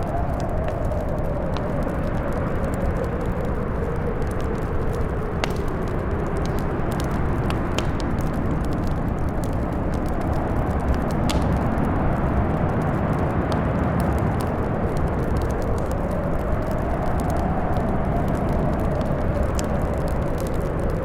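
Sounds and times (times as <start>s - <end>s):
blizzard wind howling: 0.0s - 21.0s
wood fire crackling and popping: 0.0s - 21.0s.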